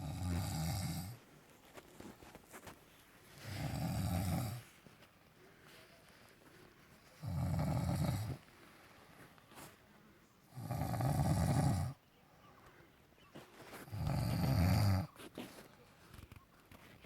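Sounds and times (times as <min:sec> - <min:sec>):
person snoring: 0:00.0 - 0:01.2, 0:03.4 - 0:04.6, 0:07.2 - 0:08.4, 0:10.5 - 0:12.0, 0:13.8 - 0:15.1.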